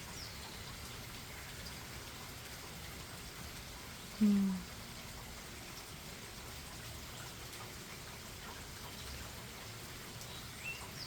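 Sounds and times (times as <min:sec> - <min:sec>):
steady rain falling: 0:00.0 - 0:11.0.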